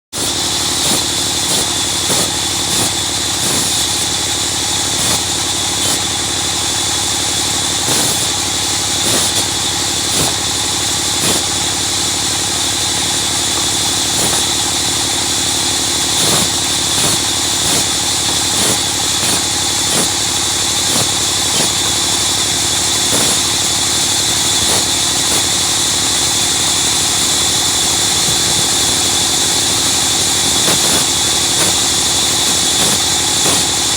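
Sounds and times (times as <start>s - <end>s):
sawmill machine running: 0.2s - 33.9s
loud continuous high hiss: 7.6s - 33.9s.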